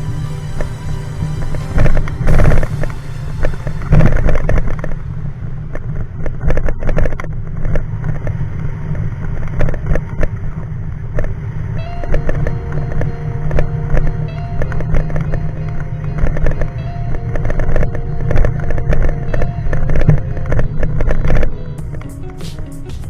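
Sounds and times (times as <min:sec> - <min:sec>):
motorcycle engine rumble: 0:00.0 - 0:23.0.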